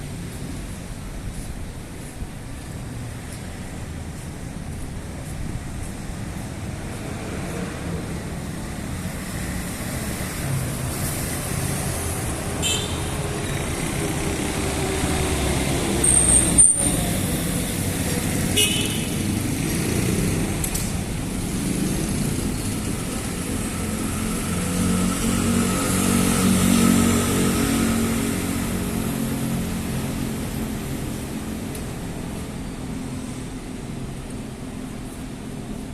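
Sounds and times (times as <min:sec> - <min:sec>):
rumble of passing traffic: 0:00.0 - 0:35.9
car horn toots: 0:12.6 - 0:13.1, 0:18.6 - 0:19.2.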